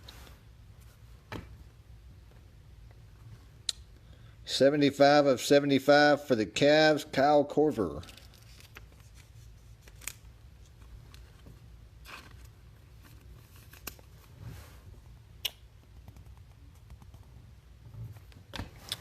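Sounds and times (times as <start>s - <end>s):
low steady hum: 0.0s - 19.0s
trading cards rustling and clicking: 8.0s - 14.3s.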